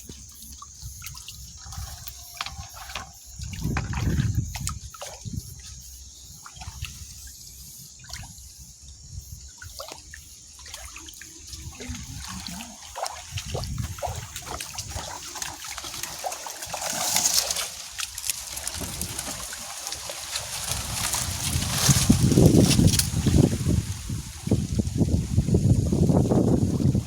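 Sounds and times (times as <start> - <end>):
shallow water sloshing: 0.0 - 5.5, 9.8 - 24.4.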